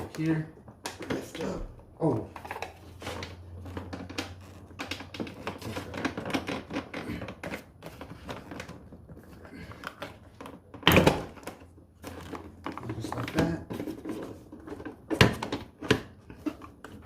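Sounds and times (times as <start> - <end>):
plastic clicks and rattles: 3.6 - 8.9.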